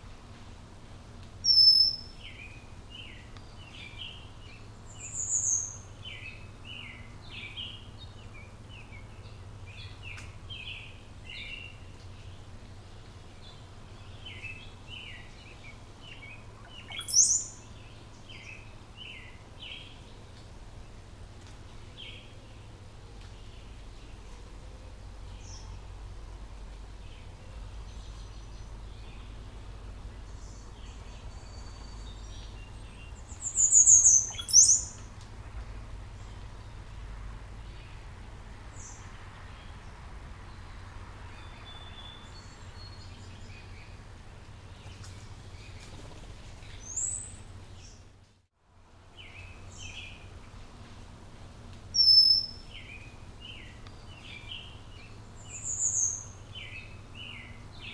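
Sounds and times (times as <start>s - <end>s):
small birds chirping: 1.4s - 8.3s, 13.4s - 20.4s, 30.2s - 35.2s, 44.7s - 48.0s, 51.9s - 57.9s
steady low hum: 2.0s - 41.6s.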